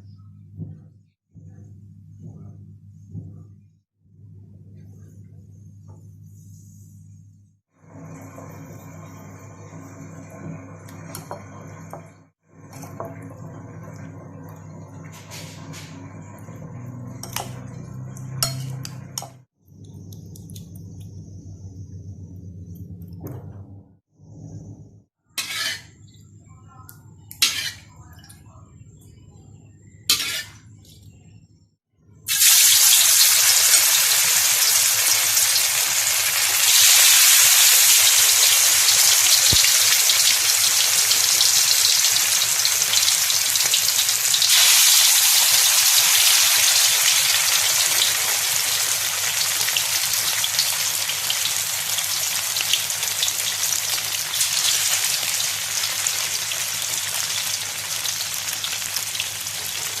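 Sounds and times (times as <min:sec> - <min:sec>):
fish sizzling in hot oil: 0:32.3 - 1:00.0.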